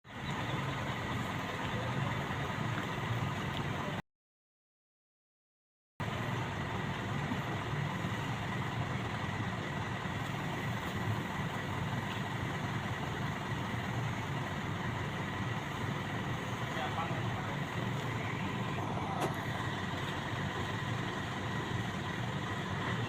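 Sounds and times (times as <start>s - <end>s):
diesel engine running: 0.0s - 4.0s, 6.0s - 23.0s
faint steady whine: 6.0s - 23.0s.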